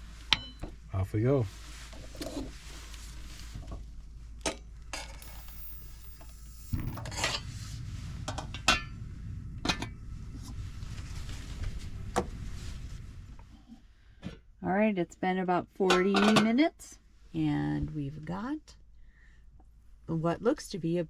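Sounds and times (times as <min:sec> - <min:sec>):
low steady rumble: 0:00.0 - 0:15.4.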